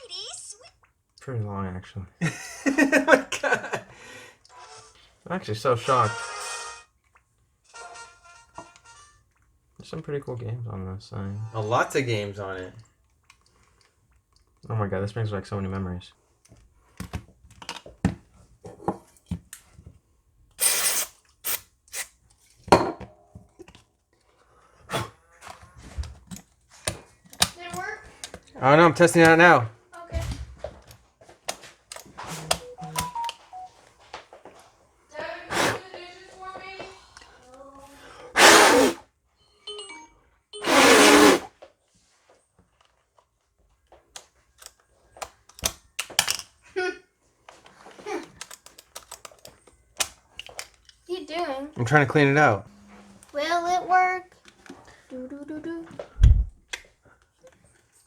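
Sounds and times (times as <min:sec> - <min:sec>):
short hissing burst: 0:20.6 - 0:22.2, 0:35.5 - 0:35.8, 0:38.3 - 0:39.0, 0:40.6 - 0:41.5
handheld game console taps: 0:31.4 - 0:33.5
faint beeps: 0:32.6 - 0:33.8.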